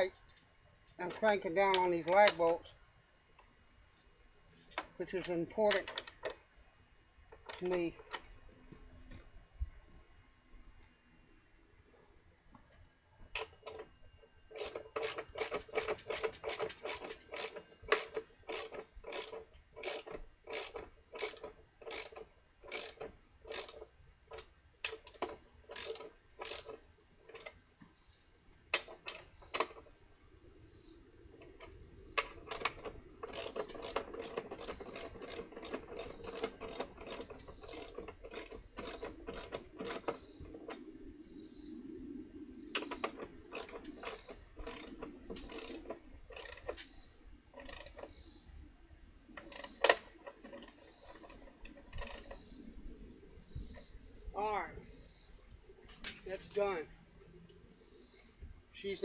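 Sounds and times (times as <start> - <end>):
bolt grinding into wood: 14.5 - 27.5, 31.5 - 40.4, 42.8 - 48.2, 49.3 - 52.6
hand ratchet clicking: 14.5 - 27.6, 31.4 - 40.8, 42.7 - 48.3, 49.3 - 52.7.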